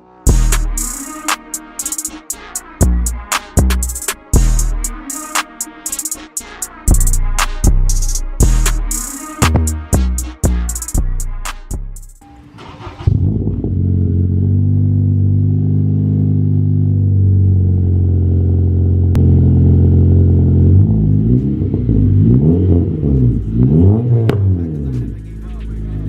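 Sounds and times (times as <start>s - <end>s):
engine revving in throttle blips: 6.9s - 26.0s
car engine idling: 16.4s - 26.0s.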